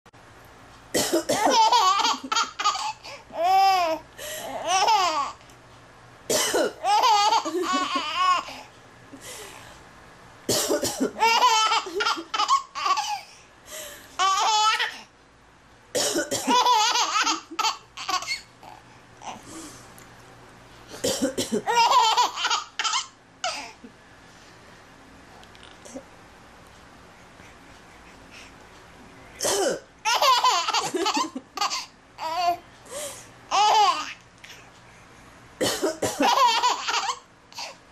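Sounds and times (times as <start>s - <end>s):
woman coughing: 1.0s - 1.6s, 6.3s - 6.8s, 10.5s - 11.2s, 16.0s - 16.6s, 21.0s - 21.8s, 29.4s - 29.9s, 35.6s - 36.4s
baby laughing: 1.5s - 5.4s, 6.8s - 8.6s, 11.2s - 13.3s, 14.2s - 15.0s, 16.4s - 19.4s, 21.6s - 23.8s, 30.0s - 32.6s, 33.5s - 34.2s, 36.2s - 37.8s.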